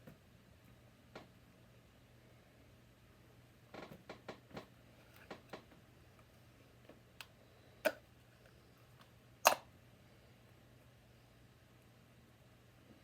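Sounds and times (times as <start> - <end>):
sharp plastic snaps: 9.4 - 9.6.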